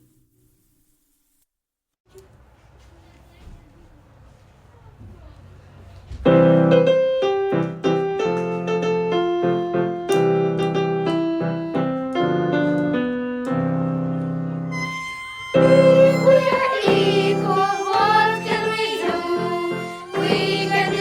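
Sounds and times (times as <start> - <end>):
slow piano melody: 6.3 - 21.0.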